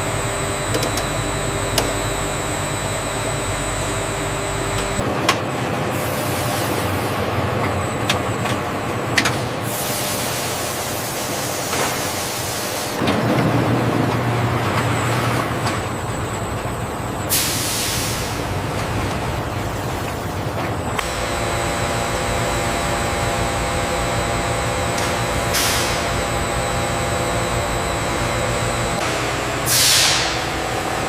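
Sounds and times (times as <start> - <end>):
machinery running: 0.0 - 31.0
compressed air hisses: 29.7 - 30.4.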